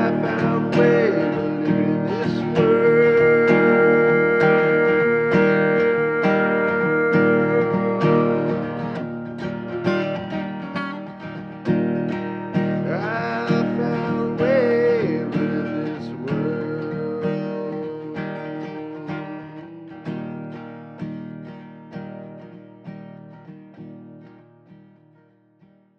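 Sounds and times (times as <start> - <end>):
person singing wavering notes: 0.0 - 9.3, 12.9 - 19.6
acoustic guitar strumming: 0.0 - 25.9.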